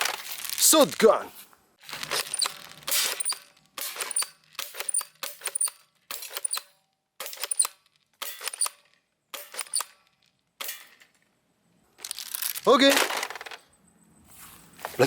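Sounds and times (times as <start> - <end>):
plastic toy gun firing: 2.2 - 8.8, 9.4 - 10.0.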